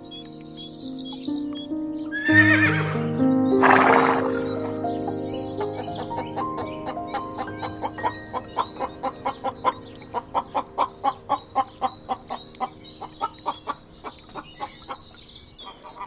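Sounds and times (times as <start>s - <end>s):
high thin chirping: 2.2s - 5.0s.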